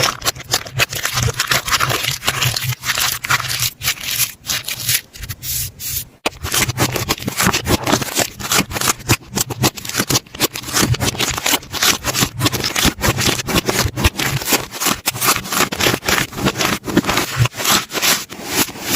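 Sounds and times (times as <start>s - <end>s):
slime crackling and squishing: 0.0s - 5.4s, 6.2s - 18.9s.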